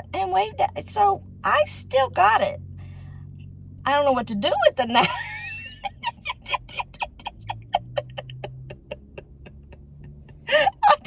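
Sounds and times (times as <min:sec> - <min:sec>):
woman laughing breathily: 0:05.1 - 0:10.9.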